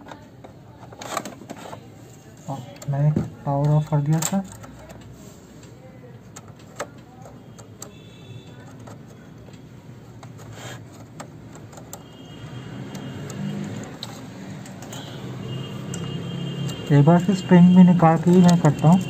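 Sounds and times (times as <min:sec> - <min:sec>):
hands tapping plastic parts: 0:02.7 - 0:12.1.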